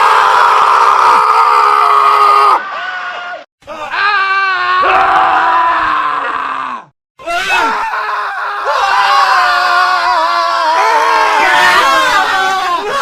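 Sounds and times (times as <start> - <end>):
men screaming: 0.0 - 13.0.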